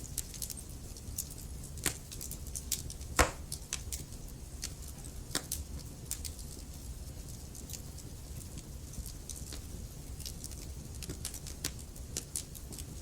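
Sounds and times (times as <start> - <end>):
logs crackling in fireplace: 0.0 - 13.0
low rumble of fire: 0.0 - 13.0.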